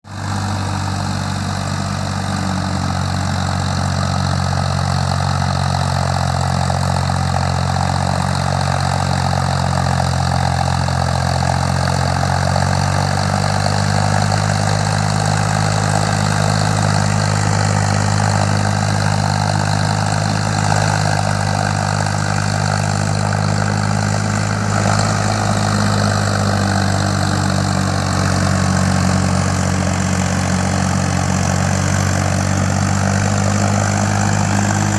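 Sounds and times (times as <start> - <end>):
tractor engine running: 0.0 - 34.9.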